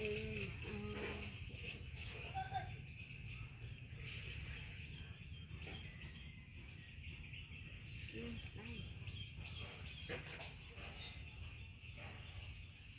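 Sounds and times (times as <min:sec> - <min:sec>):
small bird chirps: 0:00.0 - 0:12.9.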